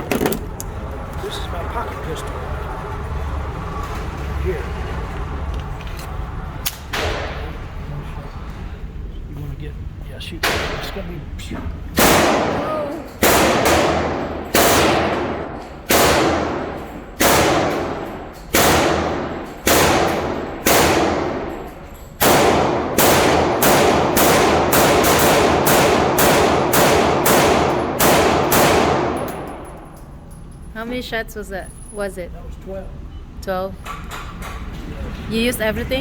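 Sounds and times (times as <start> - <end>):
pistol shots: 12.0 - 21.6, 22.2 - 29.7.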